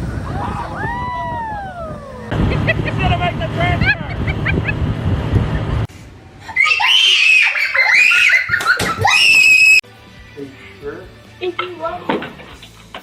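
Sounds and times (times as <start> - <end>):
low rumble: 0.0 - 5.9
voices: 1.6 - 4.6
high-pitched screaming: 6.5 - 9.8.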